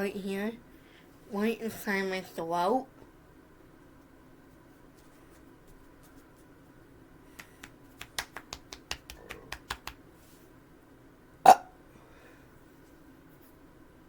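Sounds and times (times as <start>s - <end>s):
person burping: 11.5s - 11.7s.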